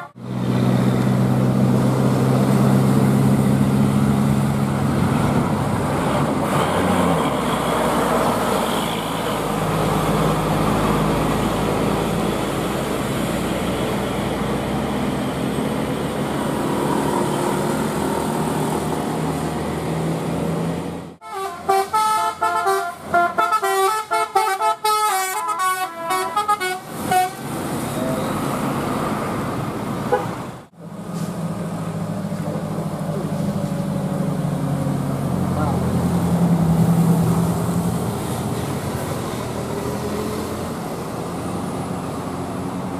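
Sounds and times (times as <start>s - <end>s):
road noise: 0.0s - 42.9s
multi-tone musical horn: 21.2s - 27.4s.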